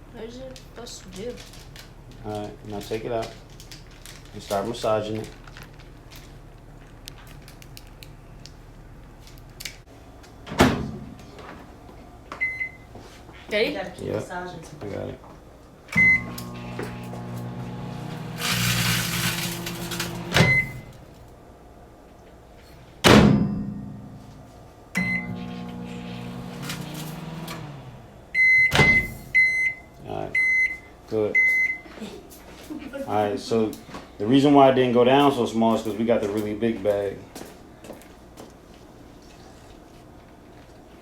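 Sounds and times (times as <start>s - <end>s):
microwave oven humming: 15.6s - 21.8s, 23.0s - 32.2s
keypad beep: 16.0s - 16.3s
microwave door thump: 19.5s - 20.9s, 28.6s - 29.2s.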